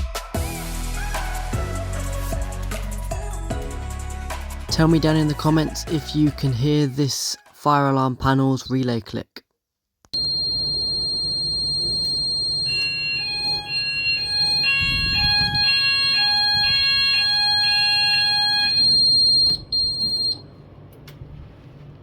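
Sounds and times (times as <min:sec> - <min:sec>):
steady high-pitched alarm tone: 0:10.2 - 0:20.4
two-tone alarm: 0:10.2 - 0:20.5.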